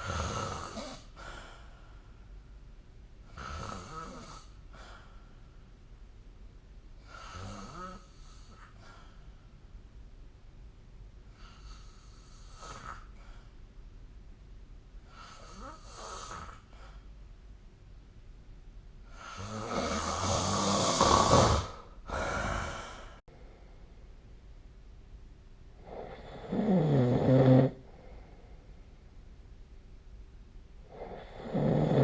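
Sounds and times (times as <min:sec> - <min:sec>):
person snoring: 0:00.0 - 0:01.1, 0:03.3 - 0:04.5, 0:07.1 - 0:08.8, 0:15.1 - 0:16.8, 0:19.1 - 0:23.2, 0:25.8 - 0:28.1, 0:30.9 - 0:32.0.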